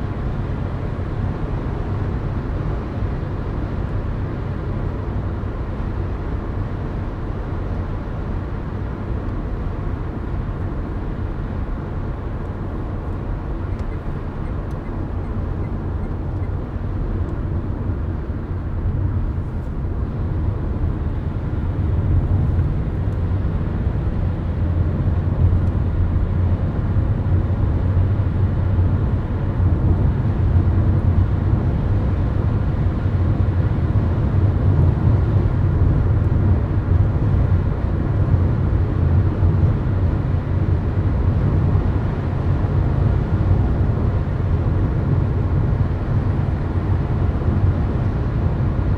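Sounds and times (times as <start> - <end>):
car cabin road noise: 0.9 - 48.9.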